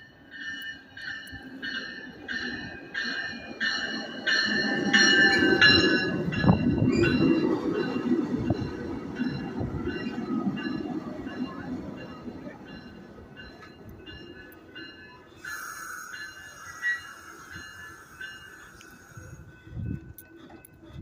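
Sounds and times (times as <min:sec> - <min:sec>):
train rumble: 0:00.0 - 0:21.0
train wheels and brakes squealing: 0:01.2 - 0:12.3, 0:13.5 - 0:21.0
hiss with high squeal: 0:15.4 - 0:19.6.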